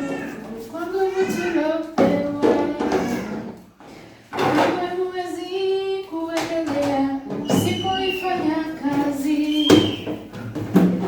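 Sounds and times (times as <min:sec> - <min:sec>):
person singing gospel song: 0:04.4 - 0:10.2.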